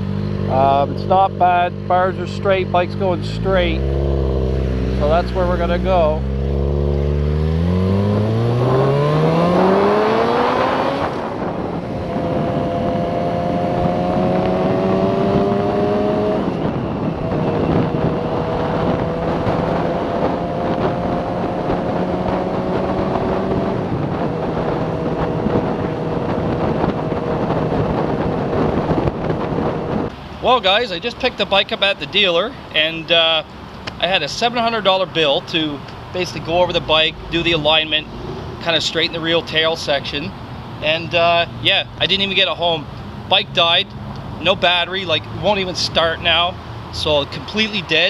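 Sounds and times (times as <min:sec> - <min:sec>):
motorcycle engine accelerating: 0:00.0 - 0:30.1, 0:34.6 - 0:39.6.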